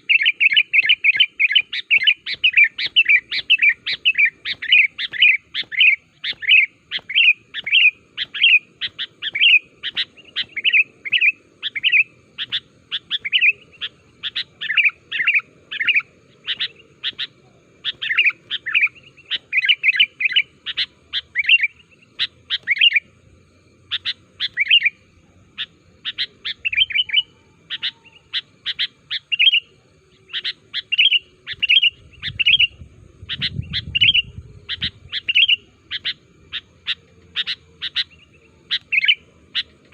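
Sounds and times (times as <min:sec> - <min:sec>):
bulbul singing: 0:00.0 - 0:39.9.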